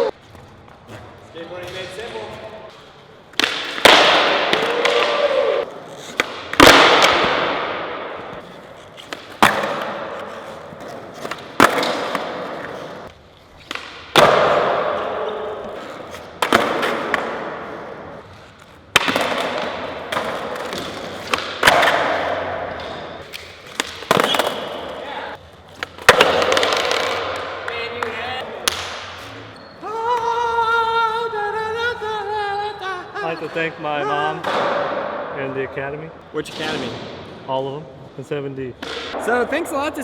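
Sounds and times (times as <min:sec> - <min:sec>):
skateboard pops and landings: 0:03.4 - 0:05.3, 0:06.1 - 0:13.0, 0:13.6 - 0:15.1, 0:16.4 - 0:17.7, 0:18.9 - 0:24.9, 0:25.8 - 0:27.5.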